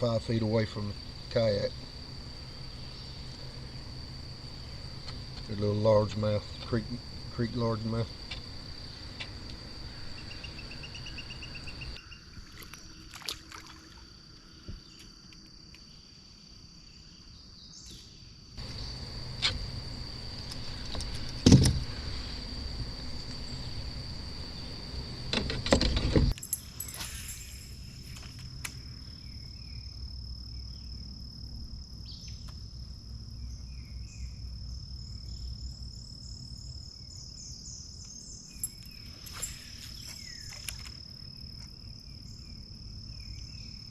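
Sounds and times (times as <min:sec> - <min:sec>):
crickets chirring: 0:00.0 - 0:43.9.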